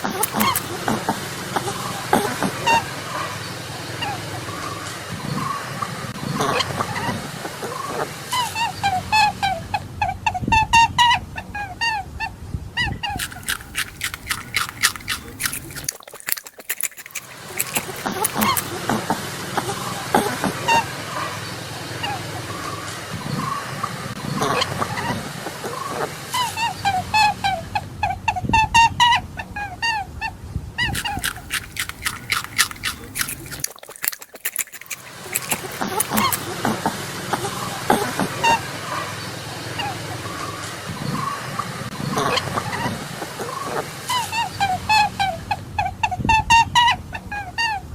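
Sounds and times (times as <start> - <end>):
short squeaky calls: 0.0 - 0.7, 17.1 - 18.7, 34.8 - 36.5
rabbit chewing: 0.0 - 1.1, 13.1 - 18.8, 30.8 - 36.5.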